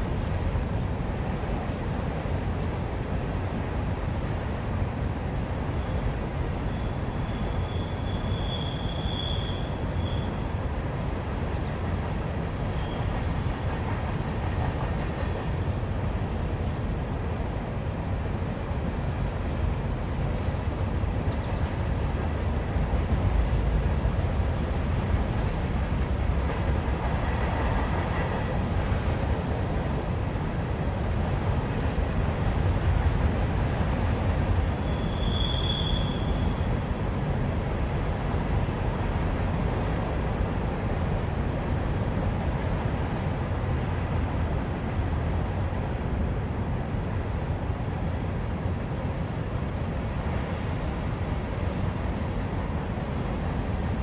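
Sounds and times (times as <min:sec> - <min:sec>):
train wheels rumbling on rails: 0:00.0 - 0:54.0
high squeal: 0:34.8 - 0:36.7.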